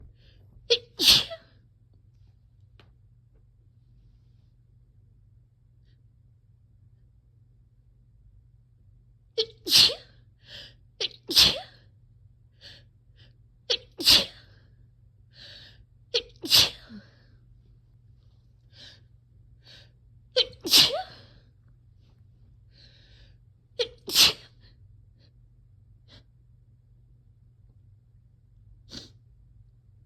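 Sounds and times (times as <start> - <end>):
person sneezing: 0.7 - 1.5, 9.4 - 10.1, 11.0 - 11.8, 13.7 - 14.5, 16.2 - 17.1, 20.4 - 21.3, 23.8 - 24.6, 28.9 - 29.2.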